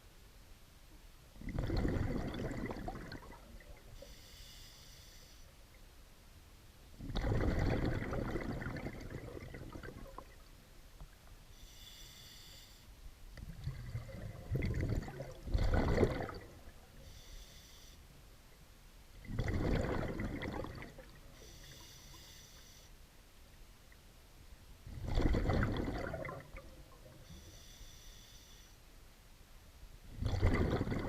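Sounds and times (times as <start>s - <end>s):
exhaled bubble bursts underwater: 1.4s - 3.9s, 7.0s - 10.5s, 13.4s - 16.9s, 19.2s - 21.3s, 24.9s - 27.2s, 30.1s - 31.0s.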